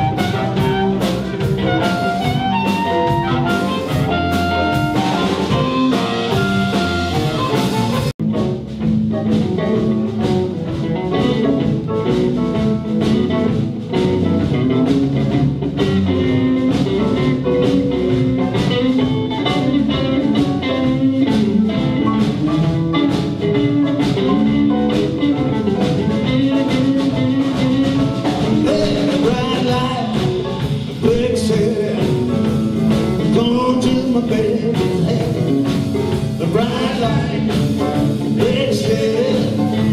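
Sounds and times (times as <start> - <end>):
live blues band playing: 0.0 - 39.9.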